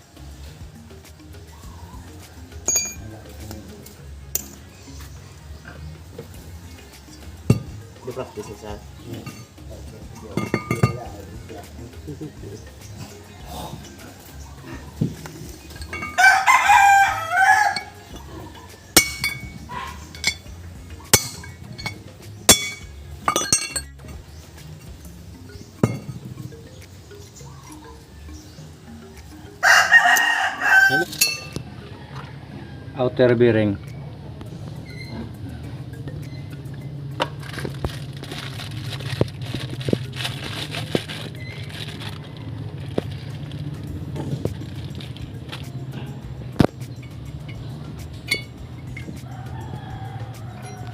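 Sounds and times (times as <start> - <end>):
sharp metallic clinks: 2.5 - 5.2, 6.8 - 13.3, 15.1 - 29.6, 30.2 - 31.7, 45.2 - 50.9
rooster crowing: 15.9 - 18.7, 29.3 - 33.3, 49.2 - 50.9
metal parts clicking and knocking: 19.0 - 24.2
rustling: 37.2 - 45.8.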